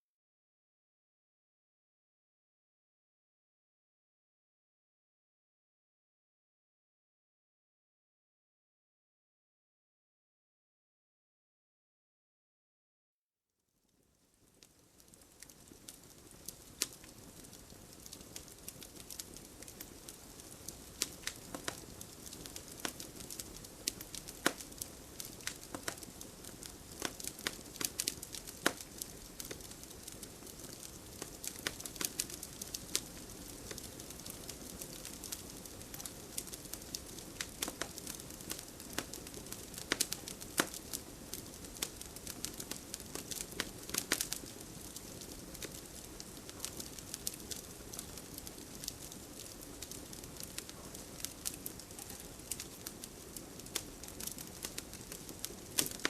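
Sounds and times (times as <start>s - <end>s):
fireplace fire crackling: 13.8s - 56.0s
soft hiss: 13.8s - 56.0s.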